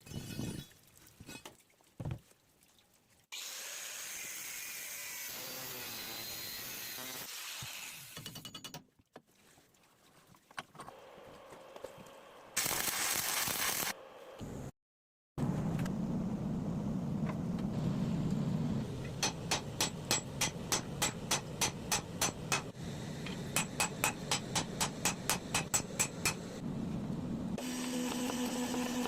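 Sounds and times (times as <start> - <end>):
loud even hiss: 12.6 - 14.0
power tool running: 27.6 - 29.0.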